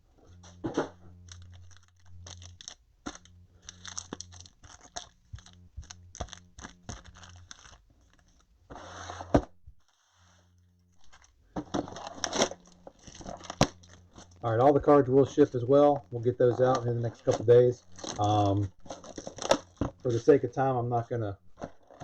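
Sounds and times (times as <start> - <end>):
packs crinkling and tearing: 1.2 - 8.5, 11.0 - 20.3.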